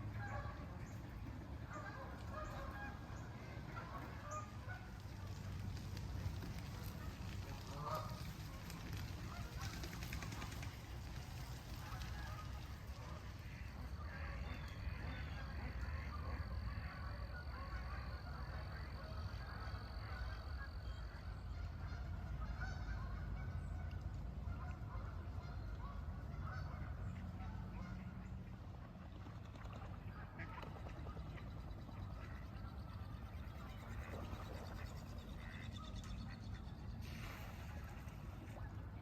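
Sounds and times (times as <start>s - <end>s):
geese honking: 0.1s - 0.8s, 1.6s - 5.4s, 6.7s - 10.5s, 11.7s - 28.7s.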